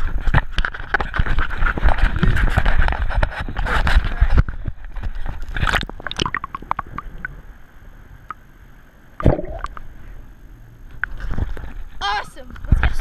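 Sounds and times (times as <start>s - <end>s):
water sloshing and gurgling: 0.0s - 13.0s.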